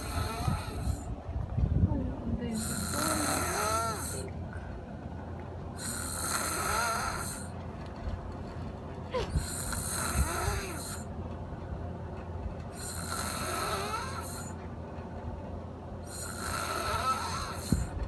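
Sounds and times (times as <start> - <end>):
person snoring: 0.0 - 1.0, 2.6 - 4.3, 5.8 - 7.5, 9.2 - 11.0, 12.8 - 14.6, 16.1 - 17.9.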